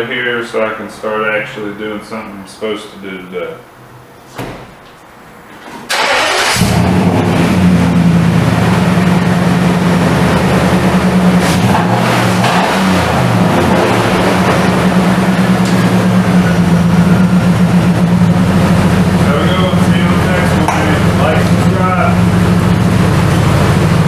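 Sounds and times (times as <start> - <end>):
engine cranking: 5.9 - 7.8
engine idling: 5.9 - 24.0.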